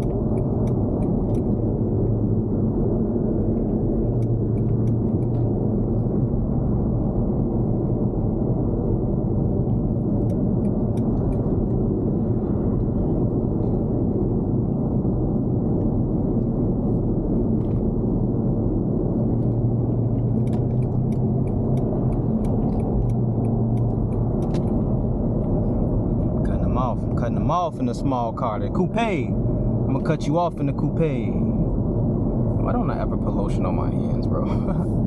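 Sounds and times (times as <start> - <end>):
car engine and road rumble: 0.0 - 35.0.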